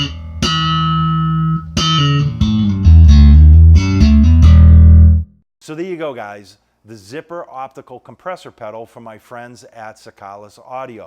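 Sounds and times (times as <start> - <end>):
plucked electric bass guitar: 0.0 - 5.4.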